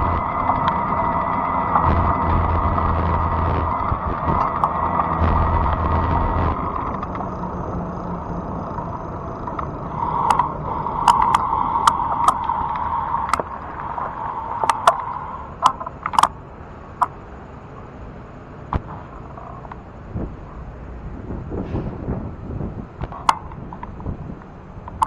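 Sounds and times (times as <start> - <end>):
electric bike humming: 0.0 - 17.9
sharp clicks: 9.6 - 12.5, 13.3 - 16.4
wind on microphone: 21.1 - 25.0.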